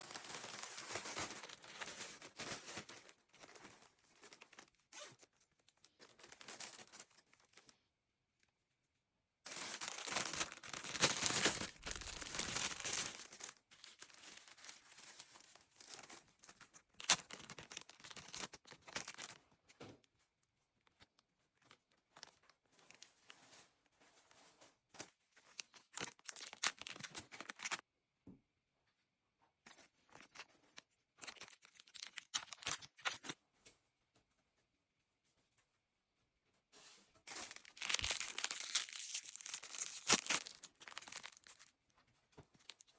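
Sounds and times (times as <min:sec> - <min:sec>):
plastic packaging tearing and crinkling: 0:00.0 - 0:05.3, 0:09.5 - 0:19.4, 0:25.4 - 0:27.8, 0:31.2 - 0:33.4, 0:37.3 - 0:41.7.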